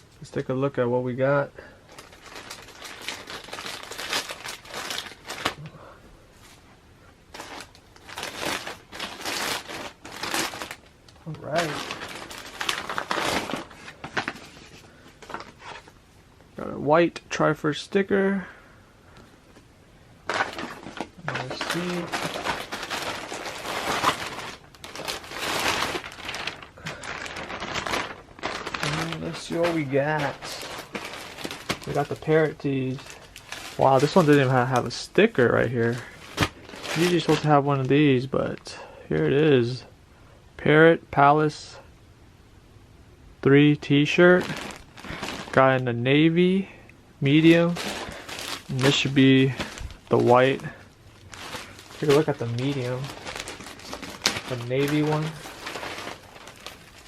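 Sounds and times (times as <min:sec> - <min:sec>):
packaging crinkling: 0:01.8 - 0:05.8, 0:07.3 - 0:16.0, 0:20.2 - 0:38.2, 0:44.2 - 0:45.9, 0:47.2 - 0:57.0.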